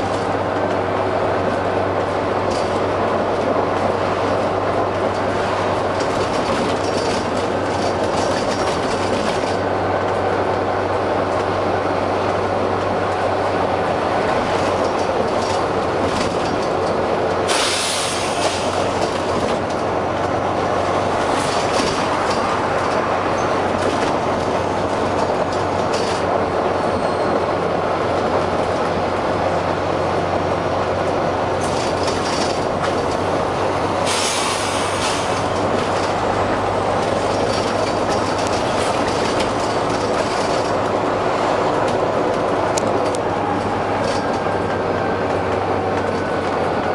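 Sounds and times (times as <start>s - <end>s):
bus diesel engine: 0.0s - 46.9s
air brake hiss: 17.5s - 18.8s, 34.0s - 35.4s.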